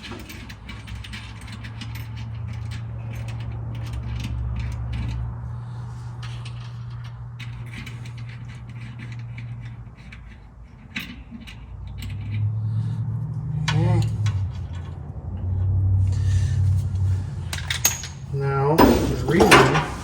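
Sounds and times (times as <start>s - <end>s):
hand tools and metal parts rattling: 0.0s - 20.0s
steady low hum: 12.5s - 20.0s.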